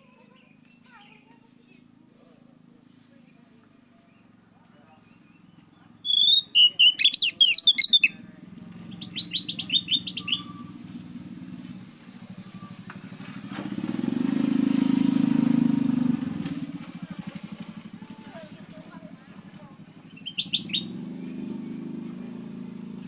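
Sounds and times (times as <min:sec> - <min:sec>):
low pulsing engine hum: 0:00.0 - 0:23.0
magpie-robin singing whistled notes: 0:05.0 - 0:08.2, 0:08.9 - 0:10.8, 0:20.0 - 0:21.6.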